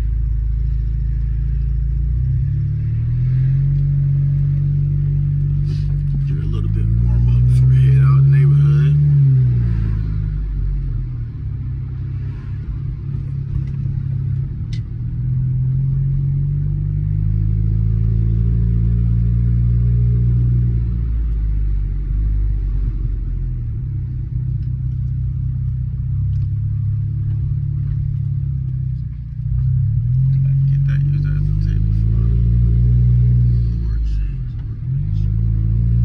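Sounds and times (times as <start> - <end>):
car engine revving: 0.0 - 36.0.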